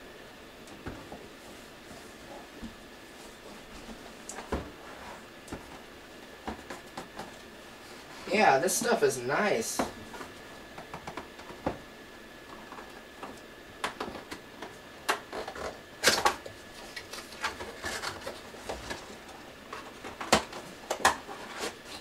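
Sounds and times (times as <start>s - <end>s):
packaging rustling and clicking: 12.6s - 22.0s.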